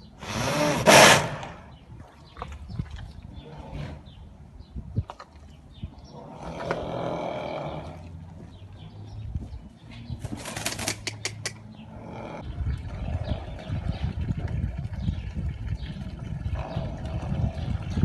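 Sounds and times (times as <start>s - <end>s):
horse snorting: 0.2s - 1.7s, 6.1s - 8.2s.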